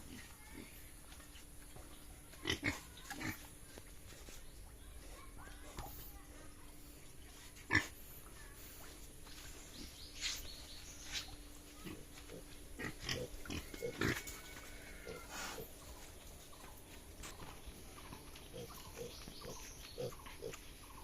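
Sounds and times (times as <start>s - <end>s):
pigs grunting: 7.7s - 8.1s, 11.8s - 15.8s.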